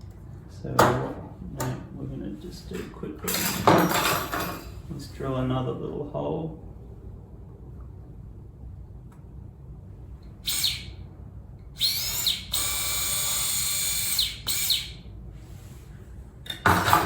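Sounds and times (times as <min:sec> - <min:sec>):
small electric drill whirring: 0:10.4 - 0:11.0, 0:11.7 - 0:15.0.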